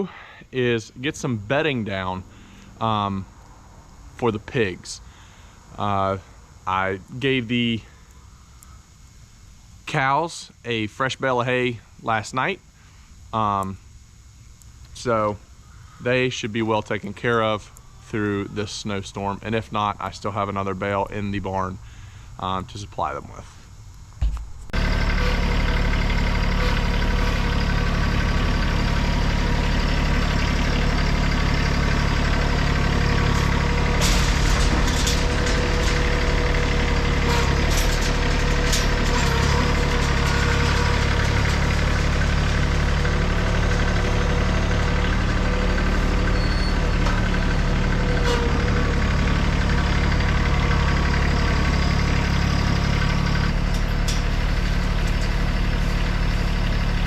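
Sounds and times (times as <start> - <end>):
vehicle engine running: 24.1 - 57.0
clicks and rattles: 29.7 - 44.0.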